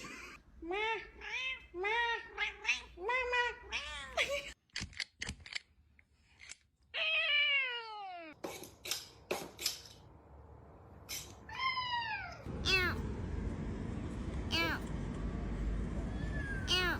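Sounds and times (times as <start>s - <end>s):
cat meowing: 11.5s - 13.0s, 14.5s - 14.9s, 16.1s - 16.9s.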